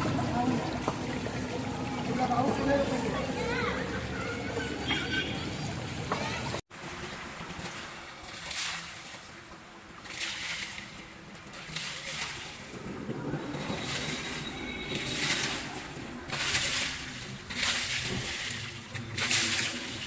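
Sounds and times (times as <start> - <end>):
voices: 0.0 - 6.6
water sloshing and splashing: 0.0 - 20.0.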